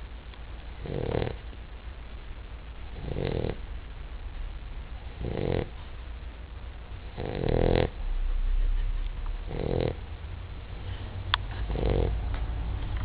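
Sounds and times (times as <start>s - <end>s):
low hum: 0.0s - 13.0s
dog rattling snores: 0.8s - 1.4s, 3.0s - 3.6s, 5.2s - 5.7s, 7.2s - 7.9s, 9.5s - 10.0s, 11.6s - 12.2s.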